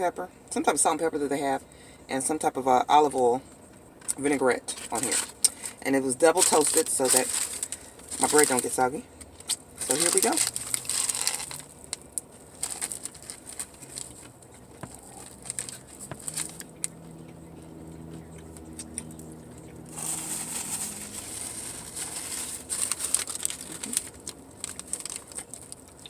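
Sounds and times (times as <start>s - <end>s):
wrapper crinkling: 4.8s - 8.8s, 9.4s - 16.9s, 19.9s - 26.0s
biting and chewing crunchy food: 4.9s - 26.0s
closed-mouth humming: 6.4s - 26.0s.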